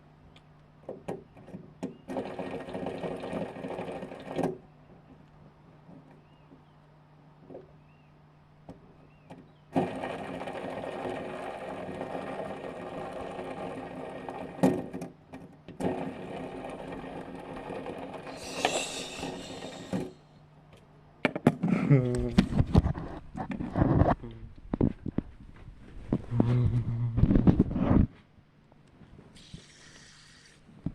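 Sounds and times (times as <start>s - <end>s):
small motor whirring: 18.1s - 20.2s.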